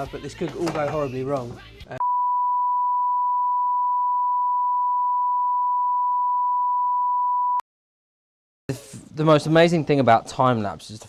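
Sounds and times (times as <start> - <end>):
electronic bleep tone: 2.0 - 7.6.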